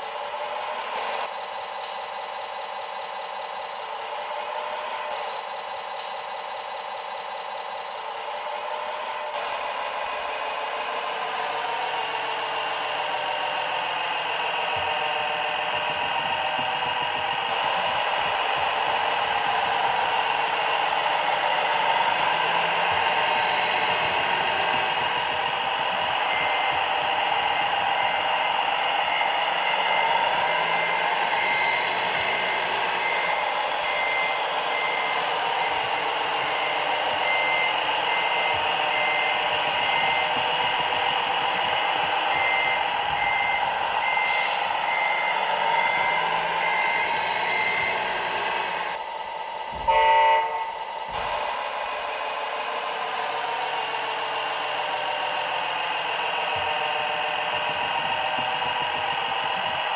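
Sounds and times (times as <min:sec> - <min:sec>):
engine and machine noise: 0:00.0 - 0:59.9
reversing alarm beeping: 0:08.5 - 0:59.9
vehicle horn toot: 0:49.8 - 0:50.8.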